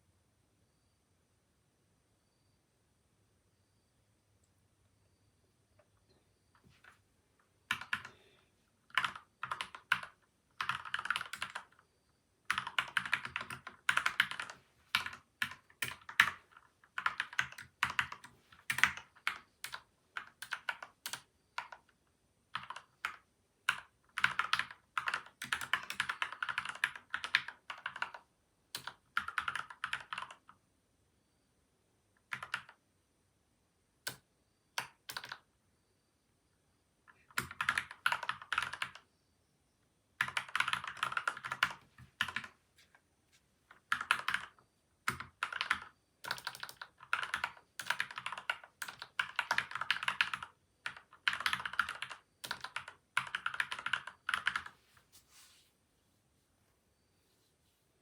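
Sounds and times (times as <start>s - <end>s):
mechanical keyboard typing: 7.7s - 8.2s, 8.9s - 11.8s, 12.5s - 30.6s, 32.2s - 32.8s, 34.8s - 35.4s, 37.2s - 39.0s, 40.2s - 42.5s, 43.7s - 54.7s.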